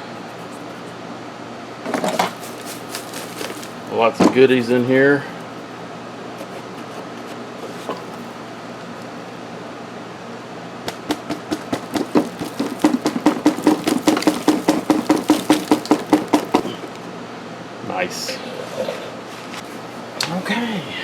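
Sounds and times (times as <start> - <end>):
steady background hum: 0.0 - 21.0
rapid hollow knocks: 10.9 - 17.0.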